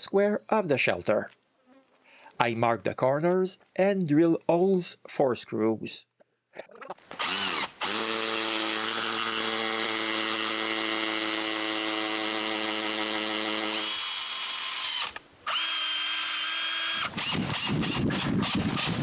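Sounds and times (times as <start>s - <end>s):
power drill drilling: 7.1s - 19.0s.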